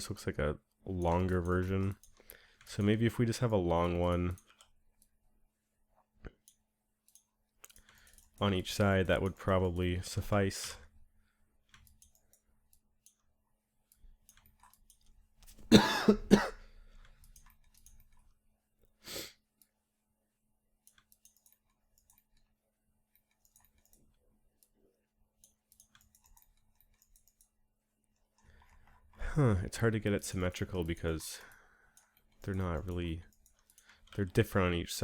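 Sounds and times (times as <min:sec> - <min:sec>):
computer mouse clicks: 0:06.2 - 0:08.5, 0:11.6 - 0:13.3, 0:13.9 - 0:15.7, 0:16.9 - 0:18.4, 0:20.8 - 0:24.8, 0:25.4 - 0:29.1, 0:30.2 - 0:34.5
man coughing: 0:15.7 - 0:16.7.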